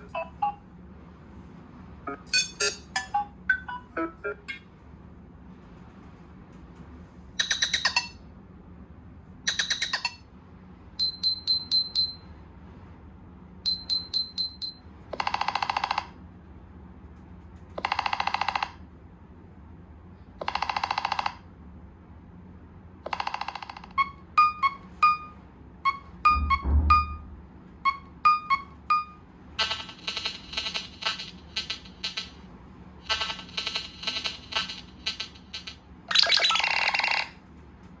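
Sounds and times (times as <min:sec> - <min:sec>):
short electronic beeps: 0:11.0 - 0:12.2, 0:13.7 - 0:14.8, 0:24.0 - 0:27.3, 0:27.9 - 0:32.3
buzzy phone tones: 0:23.4 - 0:27.2, 0:27.9 - 0:32.4.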